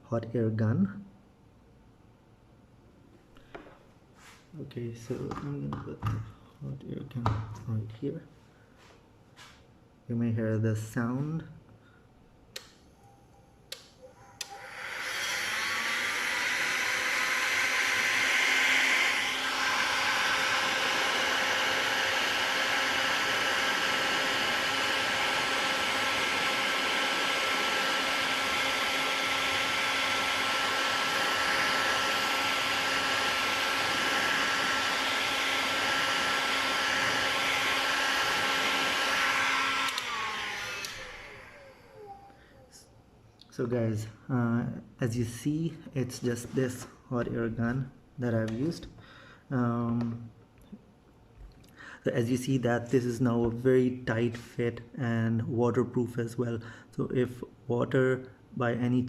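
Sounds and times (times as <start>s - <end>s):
hot air gun blowing: 14.4s - 42.4s.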